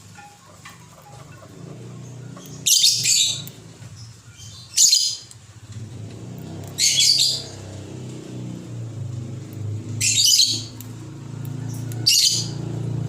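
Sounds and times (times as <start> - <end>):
lovebird shrill calls: 2.3 - 3.6, 6.7 - 7.6, 10.0 - 10.8.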